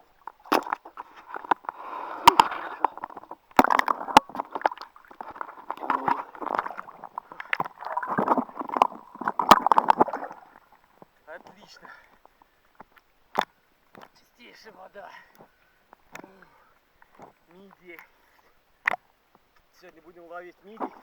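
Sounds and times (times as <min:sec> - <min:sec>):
sea water sloshing and gurgling: 0:00.0 - 0:12.4.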